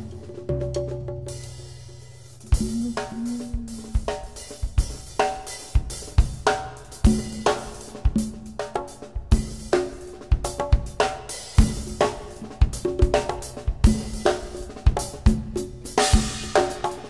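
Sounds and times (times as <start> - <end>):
bass line: 2.5 - 4.1.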